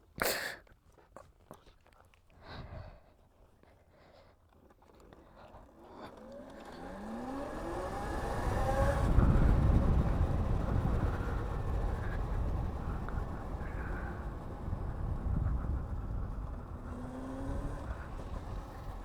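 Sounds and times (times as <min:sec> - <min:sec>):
electric scooter motor whine: 0:05.6 - 0:19.0
road noise: 0:05.6 - 0:19.0
rushing wind: 0:07.2 - 0:19.0.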